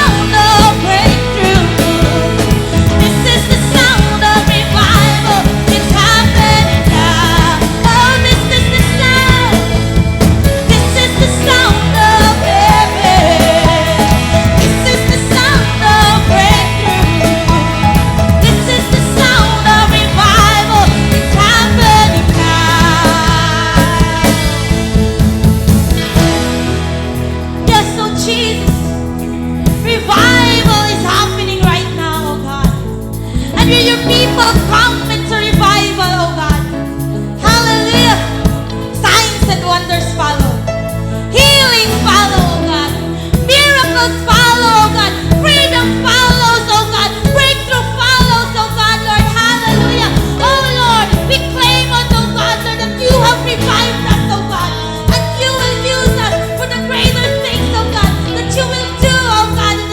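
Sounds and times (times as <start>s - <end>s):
person singing: 0.0s - 25.2s, 41.3s - 59.9s
band drums and bass: 0.0s - 59.9s.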